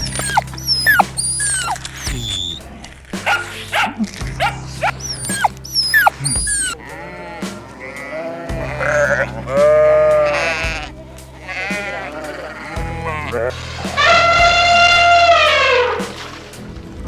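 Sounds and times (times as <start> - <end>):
sheep bleating: 0.0 - 2.6, 4.8 - 13.5
short high falling calls: 0.0 - 2.6, 4.8 - 6.8
background music with bass: 0.0 - 17.0.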